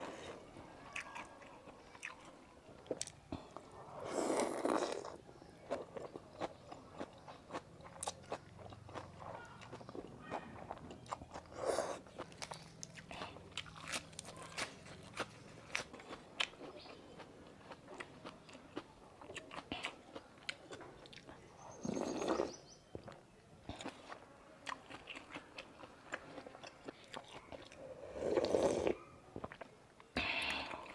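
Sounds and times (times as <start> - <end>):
wet chewing: 0.0 - 30.9
slurping noodle soup: 3.0 - 5.2, 11.4 - 13.3, 21.8 - 22.6, 27.6 - 29.0.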